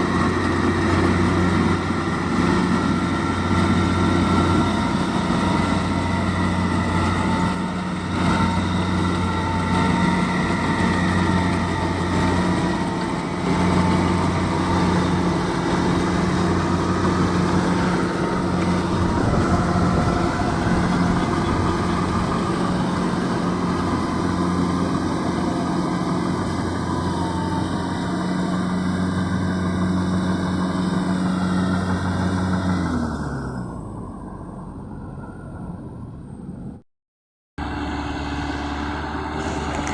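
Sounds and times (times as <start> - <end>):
wavering whine: 0.0 - 29.4
combine harvester engine running: 0.0 - 35.5, 37.6 - 39.9.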